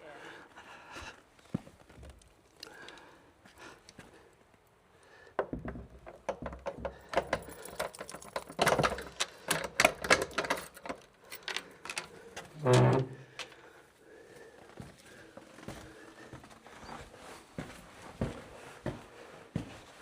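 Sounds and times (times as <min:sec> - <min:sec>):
keys rattling in door lock: 0:06.0 - 0:12.7.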